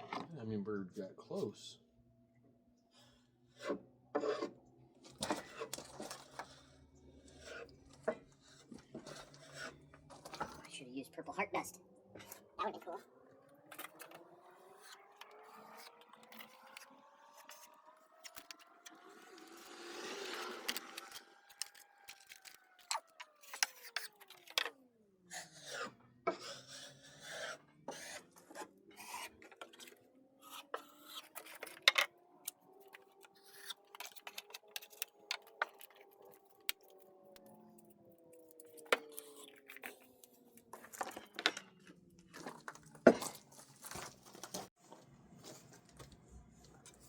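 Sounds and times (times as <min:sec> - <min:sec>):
scraping and tapping on wood: 0:03.6 - 0:06.7, 0:27.9 - 0:32.1, 0:32.8 - 0:37.9.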